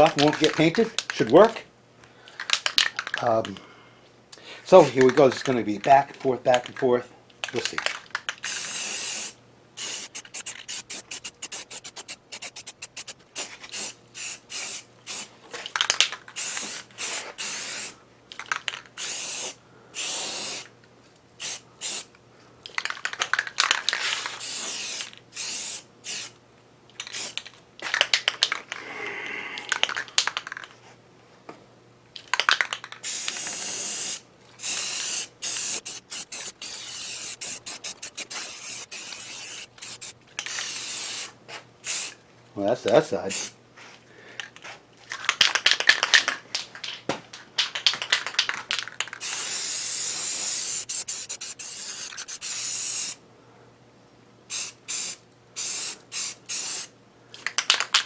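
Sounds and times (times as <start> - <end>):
spray paint hissing bursts: 8.4 - 15.3, 16.4 - 18.0, 19.0 - 20.7, 21.4 - 22.1, 24.4 - 26.3, 27.1 - 27.4, 33.0 - 42.2, 43.3 - 43.5, 49.2 - 53.2, 54.5 - 56.9.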